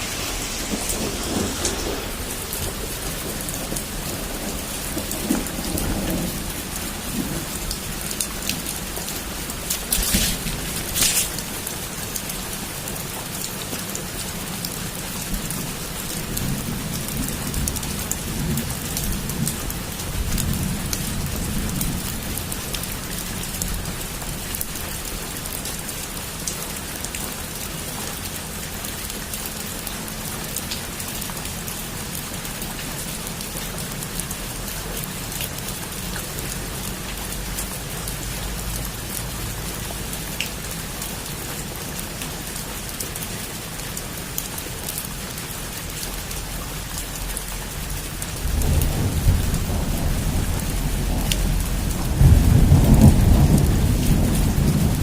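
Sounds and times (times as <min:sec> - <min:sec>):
low rumble: 0:00.0 - 0:06.5
heavy rain on a roof: 0:00.0 - 0:55.0.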